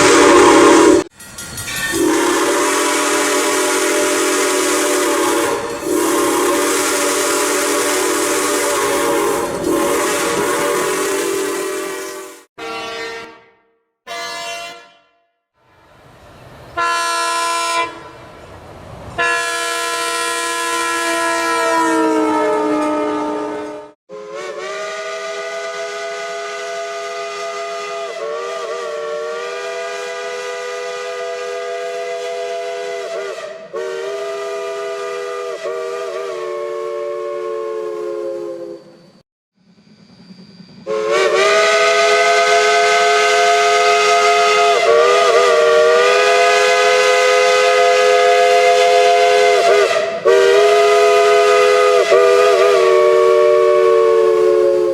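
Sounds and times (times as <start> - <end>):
train whistle blasts: 0.0 - 1.1, 1.9 - 15.3, 16.8 - 18.2, 19.2 - 39.2, 40.8 - 54.9.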